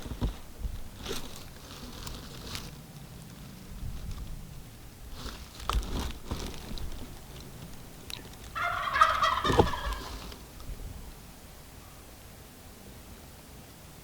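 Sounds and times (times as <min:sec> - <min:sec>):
turkey gobbling: 0:08.1 - 0:10.3
short knocks: 0:09.4 - 0:10.3.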